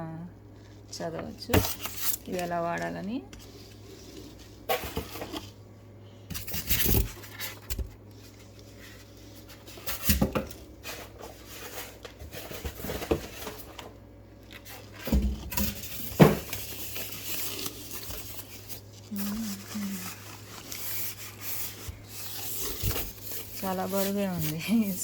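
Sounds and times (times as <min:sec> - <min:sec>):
packaging rustling: 0:06.4 - 0:25.0.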